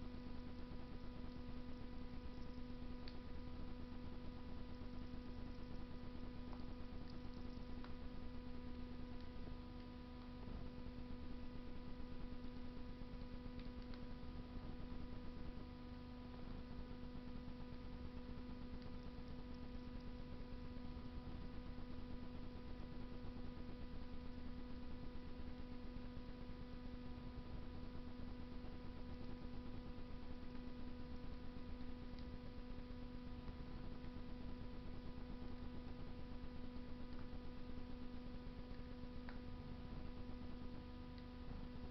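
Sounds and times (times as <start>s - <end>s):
steady electrical hum: 0.0s - 41.9s
wood fire crackling: 13.3s - 14.2s.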